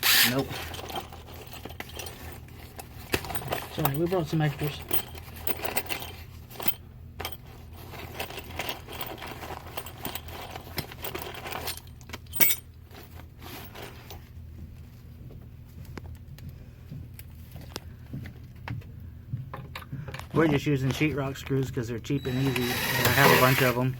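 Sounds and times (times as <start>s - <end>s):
metal screws clinking and rattling: 0.0s - 13.0s.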